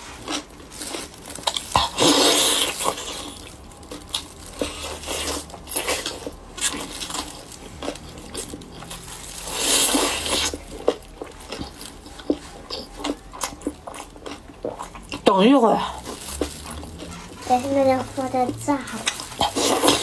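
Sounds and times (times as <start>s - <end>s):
person chewing and crunching: 0.0s - 20.0s
noisy slurp: 4.5s - 20.0s.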